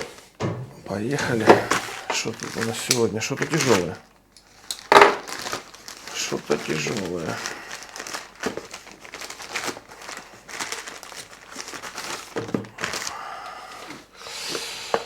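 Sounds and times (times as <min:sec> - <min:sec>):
wrapping crinkling and rustling: 0:01.1 - 0:14.6.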